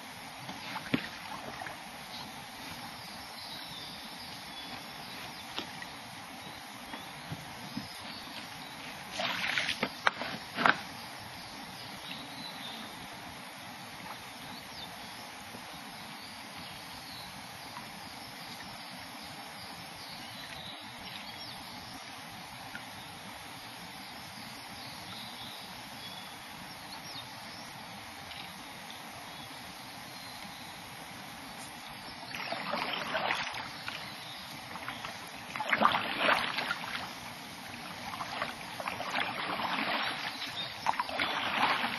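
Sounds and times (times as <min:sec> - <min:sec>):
paddle strokes splashing water: 0:00.0 - 0:11.0, 0:32.2 - 0:41.9
steady background hiss: 0:00.0 - 0:41.9.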